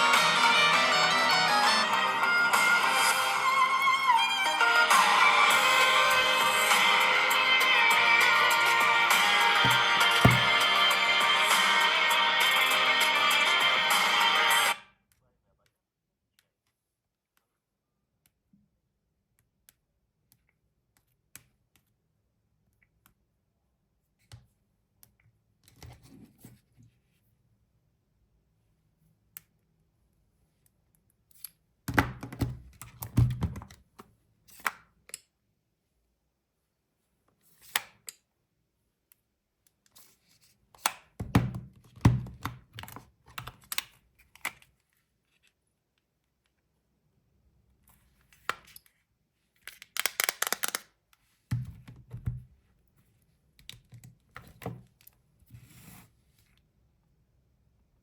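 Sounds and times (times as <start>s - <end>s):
phones tapped and set down: 9.6s - 10.6s.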